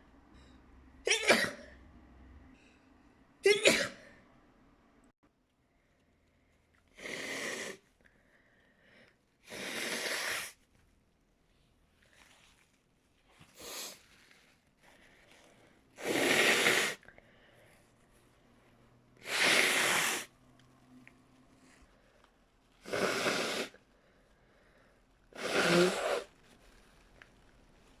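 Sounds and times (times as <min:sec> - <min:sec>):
person blowing nose: 0:07.0 - 0:07.9, 0:09.4 - 0:10.6, 0:13.5 - 0:14.1, 0:16.0 - 0:17.1, 0:19.2 - 0:20.3, 0:22.8 - 0:23.8, 0:25.3 - 0:26.4.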